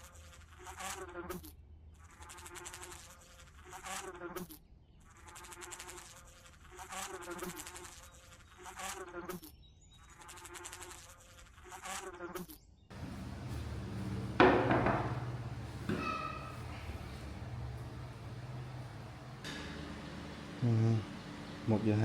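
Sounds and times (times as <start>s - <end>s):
bees buzzing: 0.0s - 9.5s, 10.1s - 22.0s
loud knock: 12.9s - 18.2s
rough background noise: 12.9s - 21.9s.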